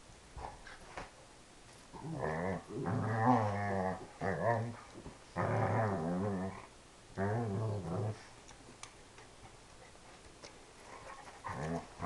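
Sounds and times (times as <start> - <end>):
dog moaning vocalisations: 2.0 - 4.8
faint light ticks: 8.4 - 10.6.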